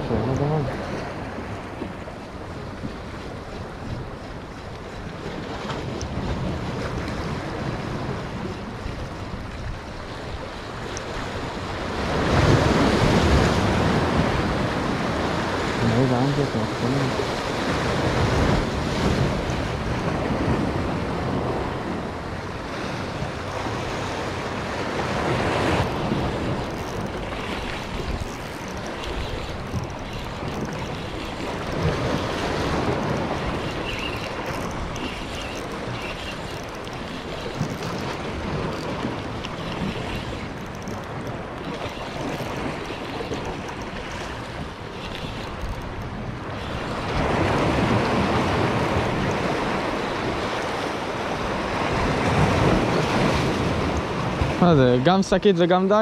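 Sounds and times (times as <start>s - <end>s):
sea waves washing: 0.0s - 56.0s.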